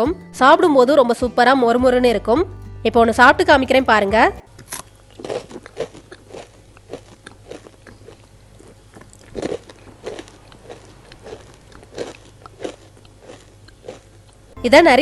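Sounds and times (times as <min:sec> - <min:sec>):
crunchy snack chewing: 0:04.6 - 0:14.6.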